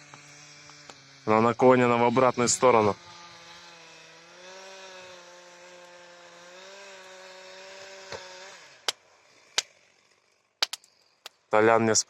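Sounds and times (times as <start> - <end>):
distant chainsaw running: 0.0 - 11.4
sharp wood cracks: 10.6 - 11.4.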